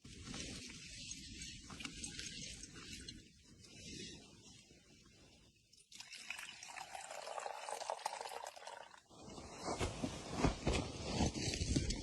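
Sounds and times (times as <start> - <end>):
liquid pouring into container: 5.8 - 9.1.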